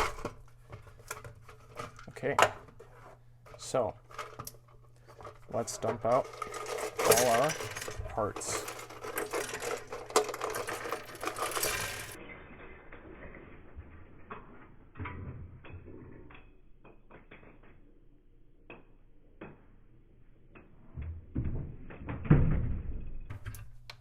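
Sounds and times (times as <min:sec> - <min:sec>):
plastic pieces clattering: 0:00.0 - 0:12.3
plastic pieces clicking: 0:03.5 - 0:12.2.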